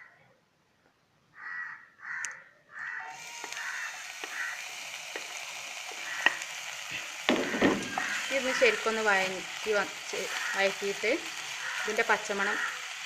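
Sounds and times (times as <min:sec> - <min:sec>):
crow cawing: 0:01.4 - 0:04.7, 0:05.9 - 0:06.4, 0:07.3 - 0:08.3, 0:10.3 - 0:10.8, 0:11.5 - 0:12.9
food sizzling in hot oil: 0:03.0 - 0:13.0.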